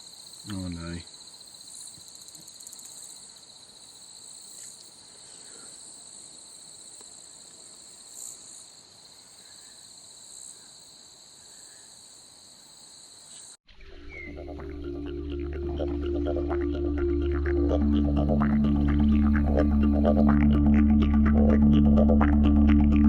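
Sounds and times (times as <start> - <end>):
high-pitched insect chorus: 0.0 - 13.6
faint insect chirps: 0.0 - 14.4.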